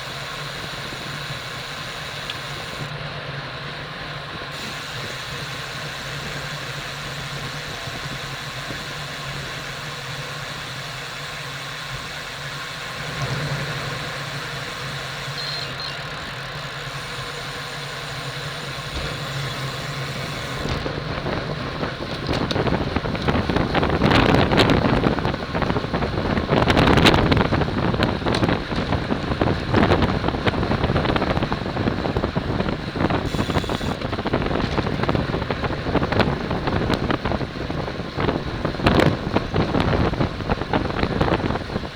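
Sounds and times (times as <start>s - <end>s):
wind buffeting microphone: 12.9s - 41.9s.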